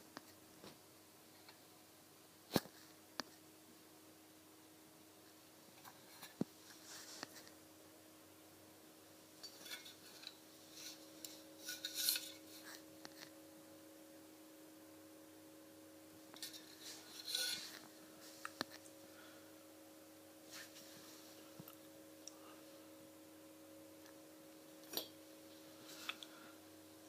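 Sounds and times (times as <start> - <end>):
faint steady hum: 0.0 - 27.0
handling noise rubbing and scraping: 5.8 - 7.6, 9.4 - 13.4, 16.4 - 18.8, 20.5 - 21.6.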